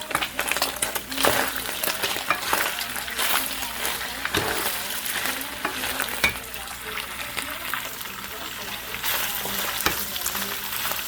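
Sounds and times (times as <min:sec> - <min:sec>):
utensil scraping a pan: 0:00.0 - 0:07.2
food sizzling in a pan: 0:00.0 - 0:11.0.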